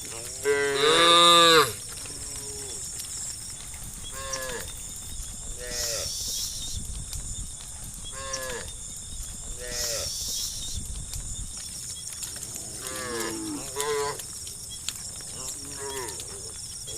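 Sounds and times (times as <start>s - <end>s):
cows mooing: 0.1s - 2.9s, 12.4s - 14.2s, 15.4s - 16.5s.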